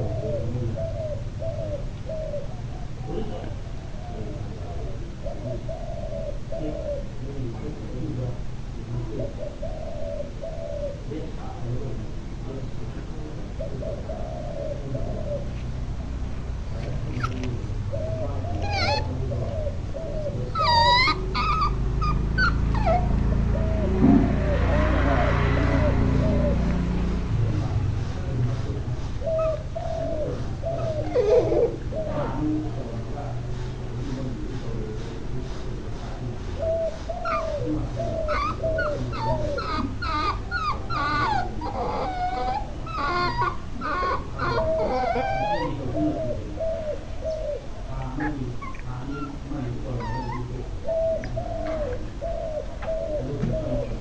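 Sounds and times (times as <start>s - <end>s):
puppy whimpering: 17.1s - 23.8s, 29.2s - 32.6s, 36.7s - 54.0s
low hum: 21.7s - 28.9s.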